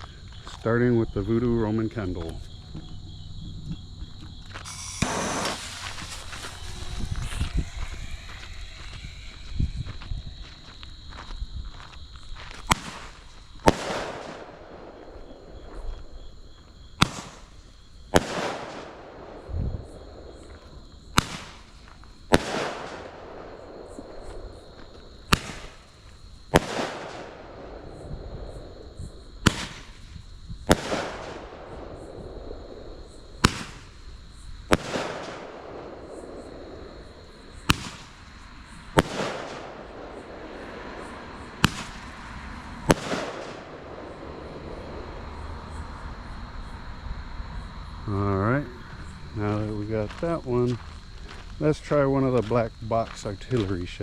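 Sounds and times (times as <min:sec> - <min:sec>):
sharp firework bang: 0:04.6 - 0:08.9, 0:29.4 - 0:30.0, 0:37.7 - 0:38.2, 0:41.6 - 0:42.2, 0:42.8 - 0:44.0
roman candle shots popping: 0:04.6 - 0:09.3, 0:37.6 - 0:38.3, 0:39.0 - 0:40.2, 0:41.6 - 0:42.2, 0:42.9 - 0:44.0
short firework hiss: 0:04.6 - 0:09.4.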